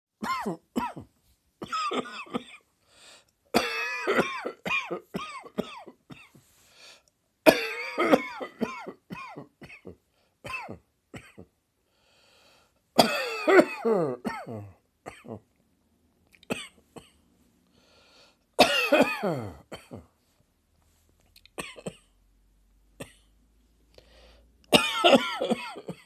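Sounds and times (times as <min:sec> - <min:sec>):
person coughing: 0:00.2 - 0:02.7, 0:03.5 - 0:06.4, 0:07.5 - 0:11.5, 0:13.0 - 0:15.4, 0:18.6 - 0:20.1, 0:21.6 - 0:22.2, 0:24.7 - 0:26.0.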